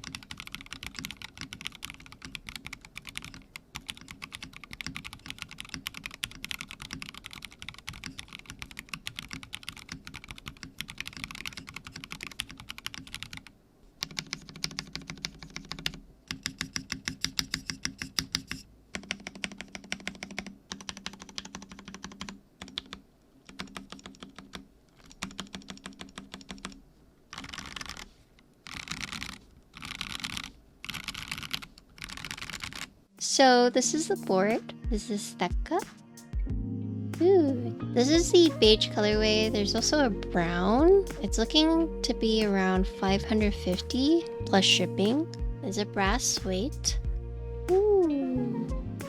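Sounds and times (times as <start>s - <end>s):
mechanical keyboard typing: 0.0s - 32.9s.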